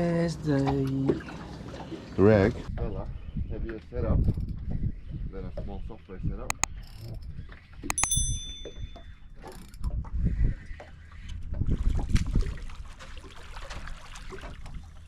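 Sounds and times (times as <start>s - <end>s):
sharp metallic clink: 7.9s - 9.0s.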